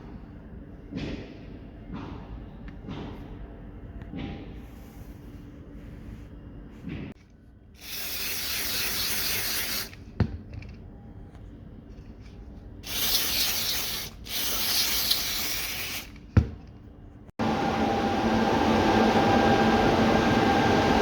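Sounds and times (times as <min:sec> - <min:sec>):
compressed air hissing: 0:07.8 - 0:10.0, 0:12.8 - 0:16.2
steady machine hum: 0:17.3 - 0:21.0.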